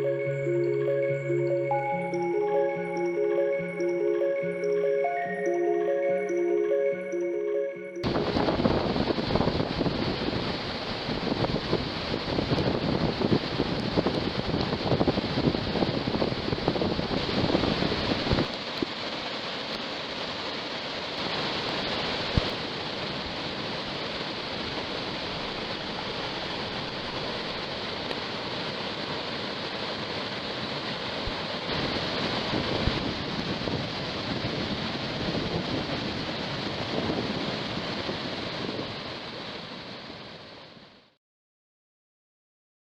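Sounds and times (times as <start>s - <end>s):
wind noise on microphone: 8.0s - 19.0s, 29.9s - 40.9s
heavy rain water rushing: 8.1s - 40.7s.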